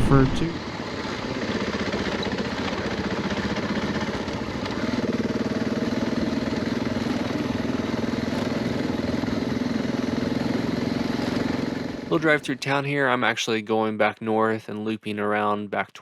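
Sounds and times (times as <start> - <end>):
motorcycle engine running: 0.0 - 12.2.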